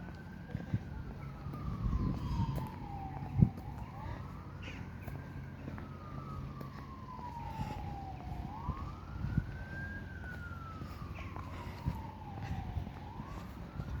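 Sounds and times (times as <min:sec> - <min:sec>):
siren wailing: 0:00.0 - 0:14.0.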